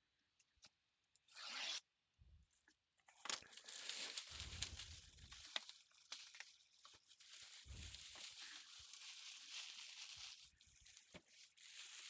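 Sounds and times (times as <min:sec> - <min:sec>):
packaging rustling and crinkling: 0:03.1 - 0:12.0.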